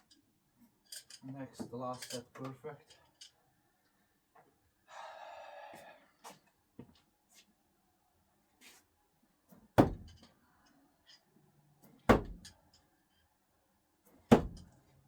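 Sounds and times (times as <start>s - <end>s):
screwdriver thunking into target: 9.8s - 10.3s, 14.2s - 14.7s.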